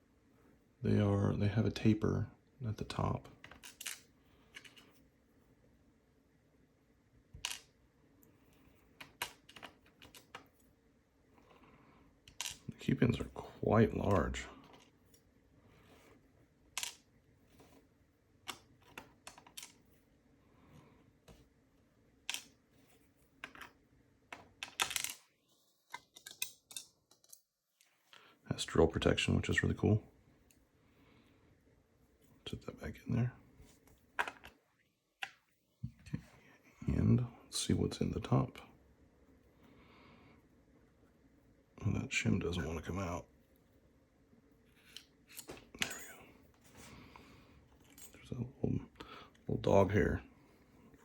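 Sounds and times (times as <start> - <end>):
small metal pins clicking: 25.9 - 27.4.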